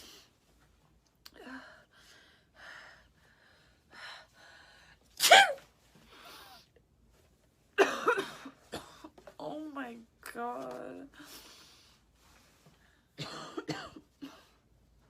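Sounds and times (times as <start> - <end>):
woman sneezing: 5.2 - 5.6.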